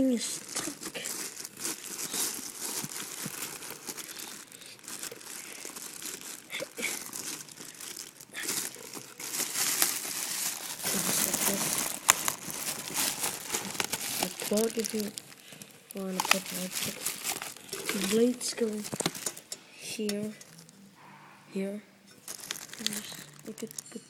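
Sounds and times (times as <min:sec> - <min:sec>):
plastic packaging crinkling: 0:00.0 - 0:20.8, 0:22.2 - 0:24.0.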